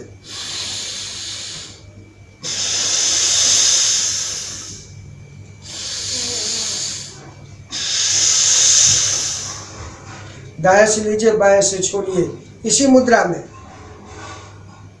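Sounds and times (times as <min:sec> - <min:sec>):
nasal breathing: 0:00.0 - 0:10.6.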